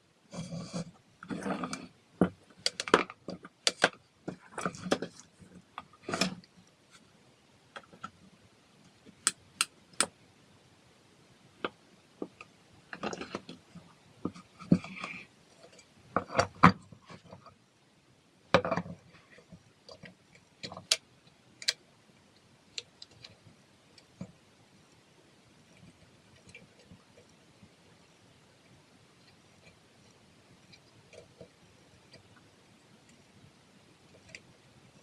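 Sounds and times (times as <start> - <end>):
small objects clicking and tapping: 18.6 - 21.8.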